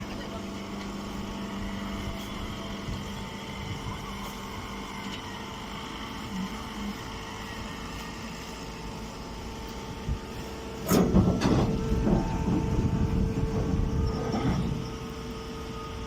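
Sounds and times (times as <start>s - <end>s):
baler machine humming: 0.0s - 16.0s
mechanical clattering and knocks: 10.8s - 15.0s.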